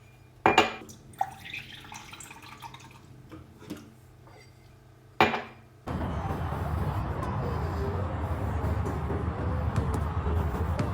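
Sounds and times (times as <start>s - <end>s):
dishes clinking and knocking: 0.5s - 0.9s, 5.2s - 5.6s
loud steady rushing noise: 5.9s - 10.9s.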